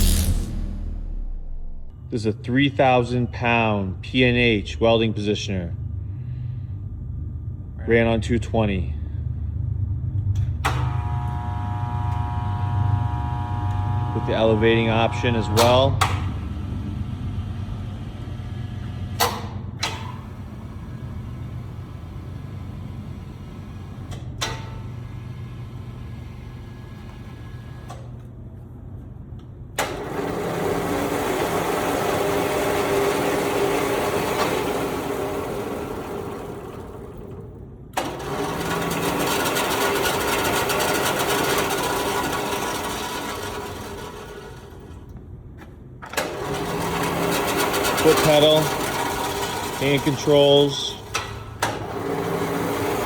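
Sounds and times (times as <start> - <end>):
low electric hum: 0.0 - 30.1
motor and gearing running: 8.0 - 28.2, 29.8 - 45.1, 46.0 - 53.0.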